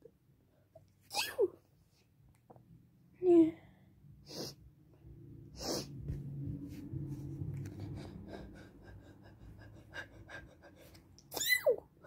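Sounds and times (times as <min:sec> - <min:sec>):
sharp bursts of breath through nose: 0:04.2 - 0:04.6
low hum: 0:04.9 - 0:10.7.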